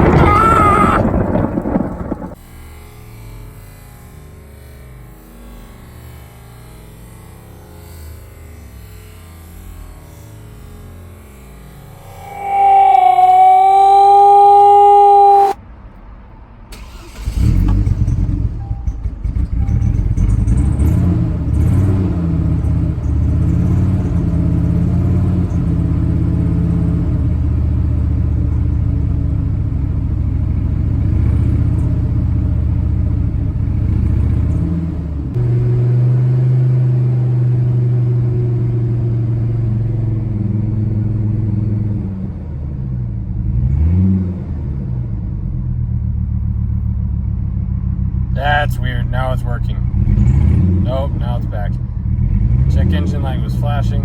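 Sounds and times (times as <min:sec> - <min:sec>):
pickup engine running rough: 0:00.0 - 0:02.4, 0:16.8 - 0:44.0, 0:45.0 - 0:54.0.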